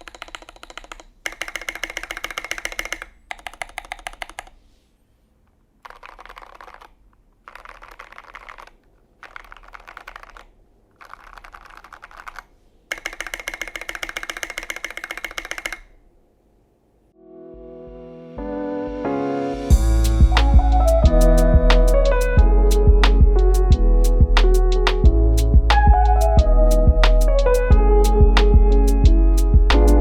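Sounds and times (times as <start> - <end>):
mechanical keyboard typing: 0.0 - 4.6, 5.8 - 16.0.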